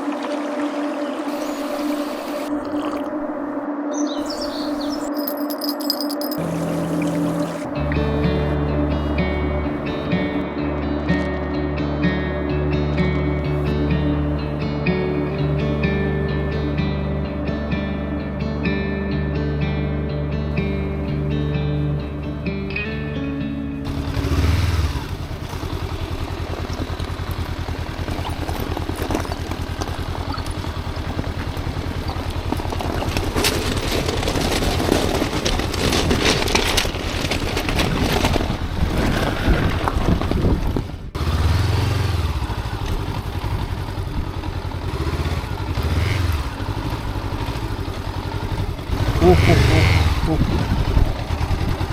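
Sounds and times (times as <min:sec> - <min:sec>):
road and wind noise: 0:00.0 - 0:51.9
motorcycle engine running: 0:04.2 - 0:08.1, 0:23.8 - 0:39.3, 0:39.9 - 0:51.9.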